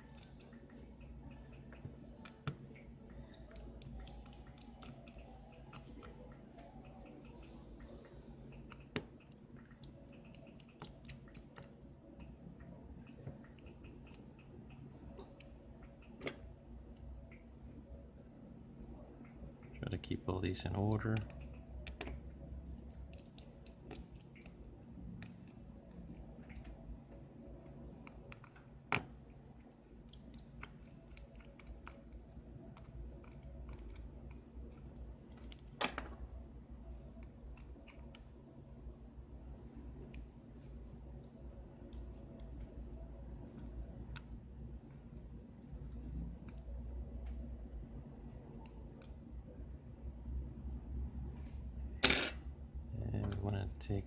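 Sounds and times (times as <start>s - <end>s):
small clicks and taps of tools: 0.0s - 17.5s.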